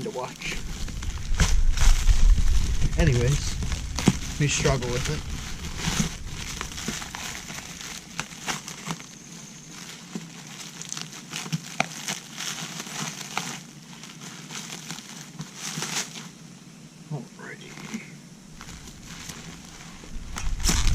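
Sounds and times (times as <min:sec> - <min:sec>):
shrink wrap crinkling and tearing: 0:00.0 - 0:16.4, 0:17.6 - 0:20.9.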